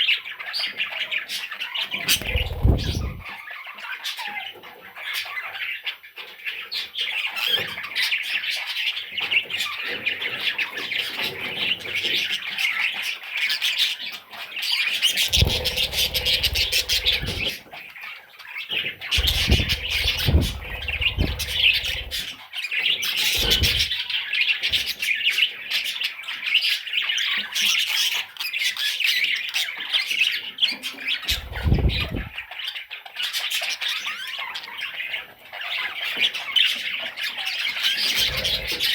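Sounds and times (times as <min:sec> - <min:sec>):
budgerigar chicks squawking: 0:01.9 - 0:03.4, 0:15.0 - 0:18.0, 0:18.7 - 0:24.1, 0:31.2 - 0:32.5, 0:37.6 - 0:38.9
dull low bumps: 0:02.2 - 0:03.2, 0:15.3 - 0:17.6, 0:19.2 - 0:22.2, 0:23.4 - 0:24.0, 0:31.3 - 0:32.4.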